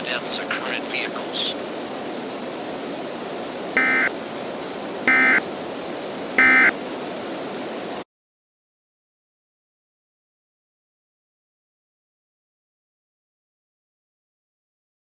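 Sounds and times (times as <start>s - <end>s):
radio static hiss: 0.0s - 7.0s
warbling data bursts: 3.8s - 4.1s, 5.1s - 5.4s, 6.4s - 6.8s.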